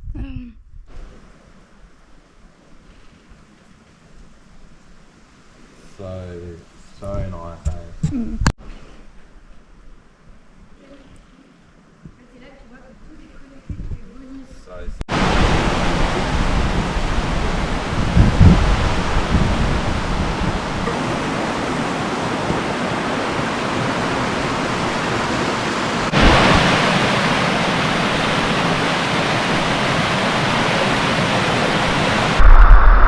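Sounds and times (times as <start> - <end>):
waterfall rushing: 15.1 - 33.0.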